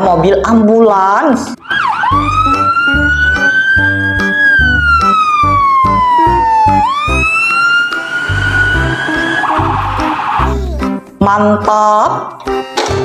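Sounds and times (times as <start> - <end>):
ambulance siren wailing: 1.6 - 10.5.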